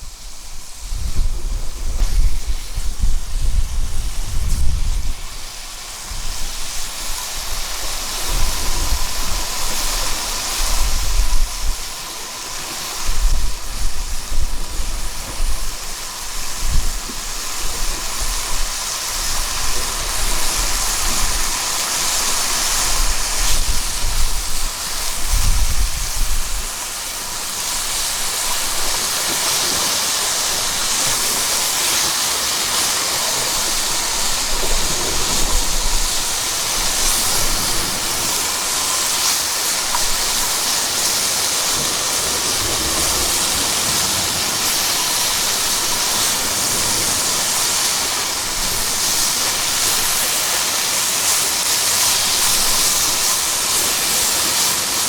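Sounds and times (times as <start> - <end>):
steady rushing noise: 0.0 - 55.0
wind gusting on microphone: 0.0 - 55.0.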